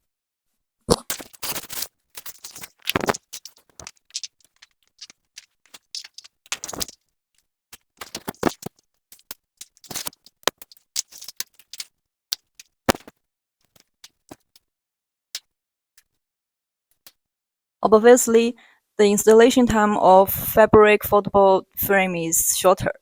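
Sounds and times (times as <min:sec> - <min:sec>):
rustling: 0:01.1 - 0:07.0, 0:07.8 - 0:13.1.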